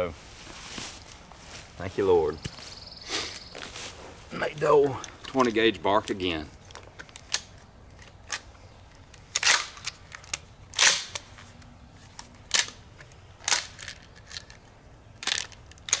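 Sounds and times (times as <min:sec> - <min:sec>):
handling rustles: 0:00.0 - 0:16.0
sharp handling clicks: 0:04.9 - 0:16.0.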